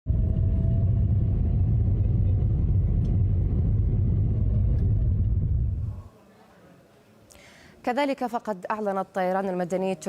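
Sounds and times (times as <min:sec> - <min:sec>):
loud low rumbling: 0:00.1 - 0:06.0.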